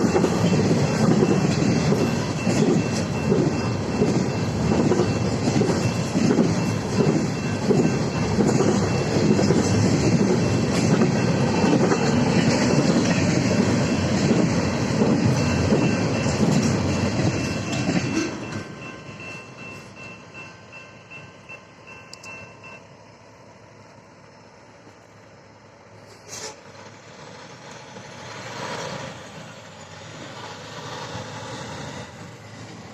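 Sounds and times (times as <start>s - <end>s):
train wheels clattering over rails: 0.0s - 21.2s
crossing signal bell ringing: 0.0s - 23.5s.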